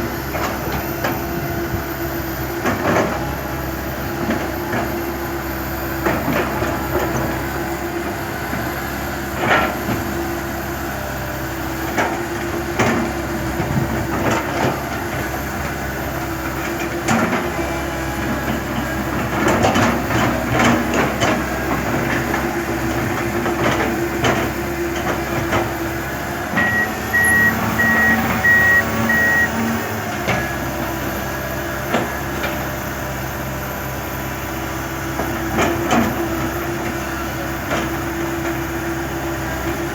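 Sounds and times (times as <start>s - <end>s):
excavator diesel engine running: 0.0s - 39.9s
back-up alarm beeping: 26.6s - 30.0s.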